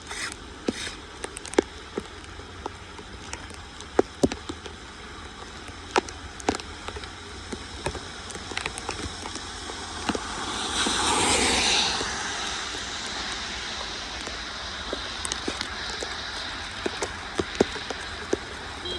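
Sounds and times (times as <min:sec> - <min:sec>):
rain pattering: 0:00.0 - 0:18.9.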